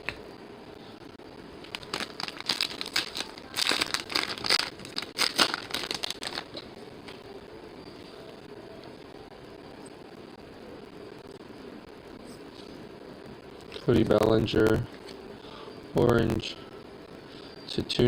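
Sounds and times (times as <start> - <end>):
foil wrappers crinkling and tearing: 1.6 - 6.6.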